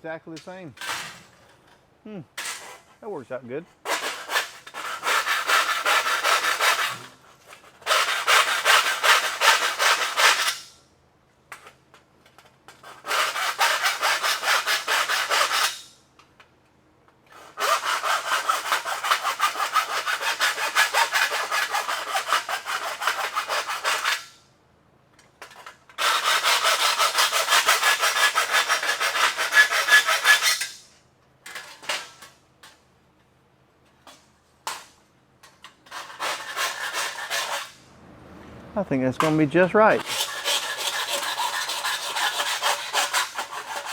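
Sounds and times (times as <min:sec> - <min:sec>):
hand file rasping on steel: 0:03.9 - 0:07.1, 0:07.8 - 0:10.6, 0:12.8 - 0:15.8, 0:17.3 - 0:24.4, 0:26.0 - 0:30.8, 0:35.4 - 0:37.8, 0:39.2 - 0:43.9.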